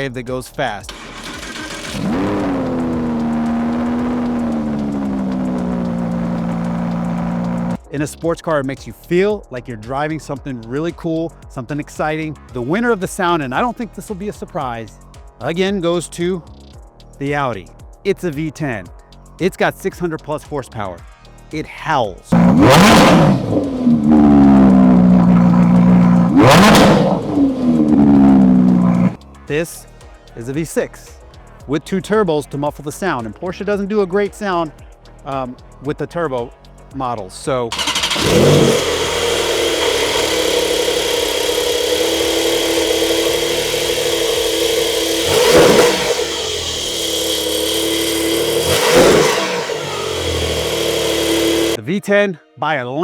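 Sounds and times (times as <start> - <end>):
car engine revving: 0.9 - 7.8, 22.3 - 29.2, 37.7 - 51.8.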